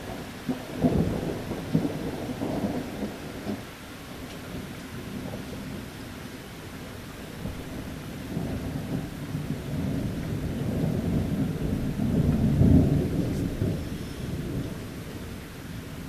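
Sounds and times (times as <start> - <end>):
rolling thunder: 0.0 - 3.7, 7.3 - 16.0
faint rain: 0.0 - 16.0.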